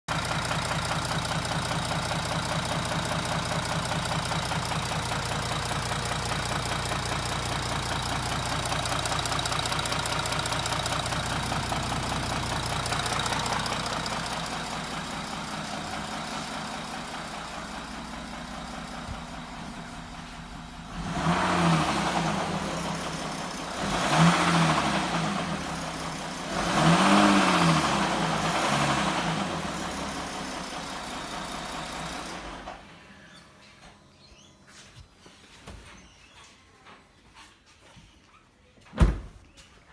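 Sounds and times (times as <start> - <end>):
car engine knocking: 0.1 - 32.6
engine revving: 20.1 - 32.8.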